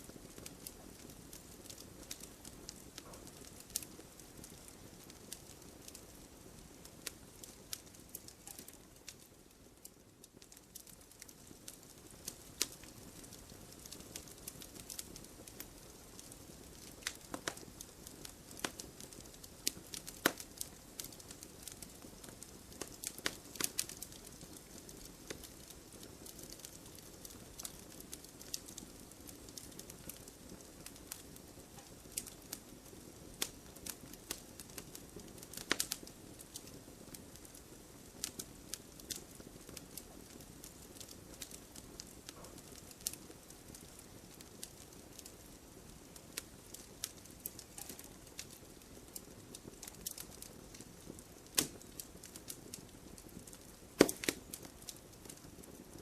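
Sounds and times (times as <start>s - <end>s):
logs crackling and popping: 0.0s - 56.0s
fire hissing: 53.2s - 55.0s.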